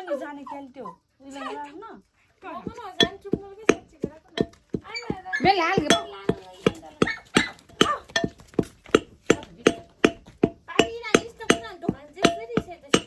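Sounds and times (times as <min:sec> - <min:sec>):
person speaking: 0:02.6 - 0:08.3
pestle pounding in wooden mortar: 0:02.6 - 0:13.0.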